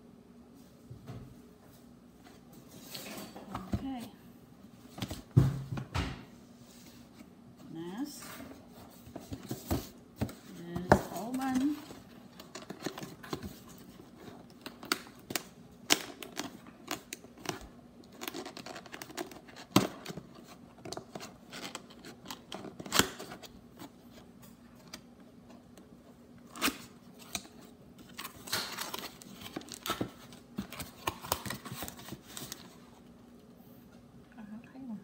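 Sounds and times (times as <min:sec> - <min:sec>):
faint steady hum: 0:00.0 - 0:35.0
packaging crinkling and rustling: 0:08.7 - 0:33.1.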